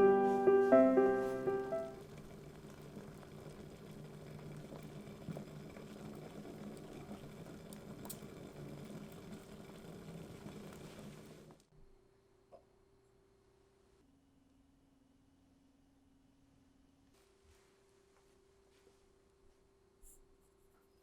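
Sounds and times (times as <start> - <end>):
pot bubbling faintly: 0.6 - 11.7.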